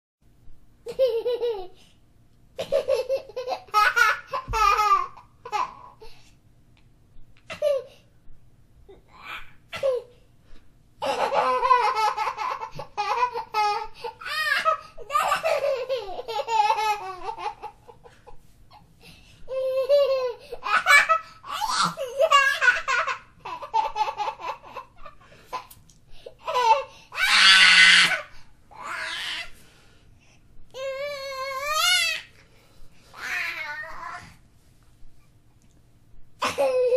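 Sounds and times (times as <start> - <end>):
small child laughing: 0.8 - 1.8, 2.6 - 6.0, 11.0 - 18.9, 19.5 - 25.8, 26.4 - 29.4, 36.4 - 36.9
baby giggling: 11.0 - 18.8
baby shrieking with laughter: 26.5 - 29.6, 30.8 - 32.3.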